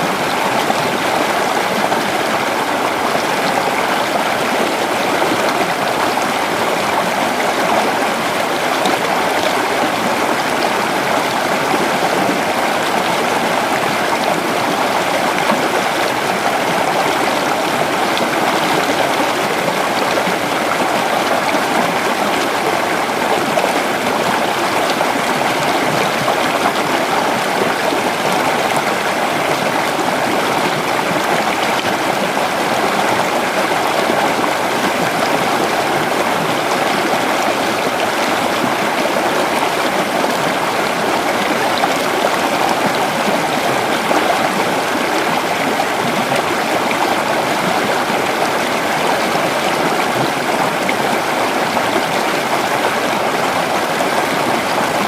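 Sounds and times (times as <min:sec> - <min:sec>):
creek water babbling over rocks: 0:00.0 - 0:55.0.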